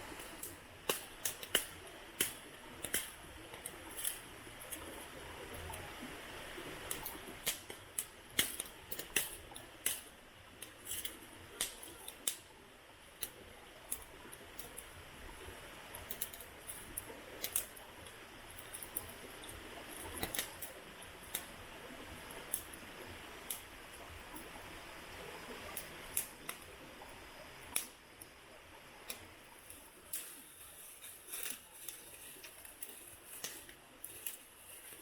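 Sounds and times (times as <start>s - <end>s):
wood fire crackling and popping: 0.1s - 5.9s, 6.8s - 12.6s, 16.0s - 21.6s, 25.8s - 26.8s, 27.6s - 28.0s.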